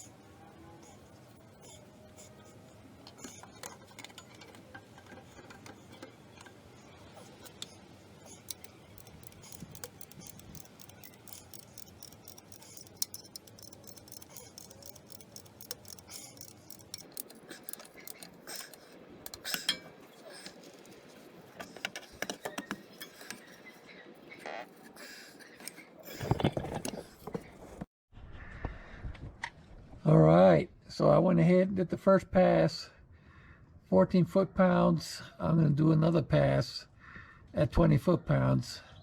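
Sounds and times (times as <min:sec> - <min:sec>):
torque wrench ratcheting: 0:00.8 - 0:23.8.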